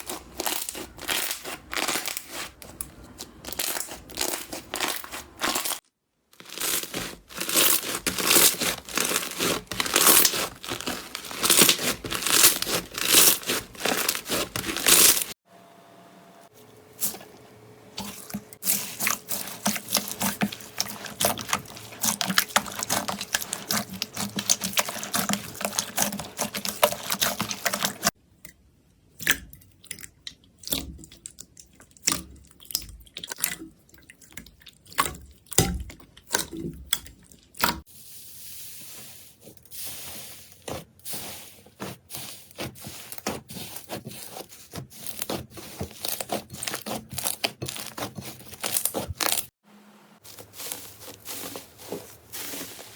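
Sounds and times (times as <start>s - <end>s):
slime crackling and squishing: 0.0s - 15.4s, 18.0s - 28.2s, 30.6s - 49.5s, 50.2s - 52.9s.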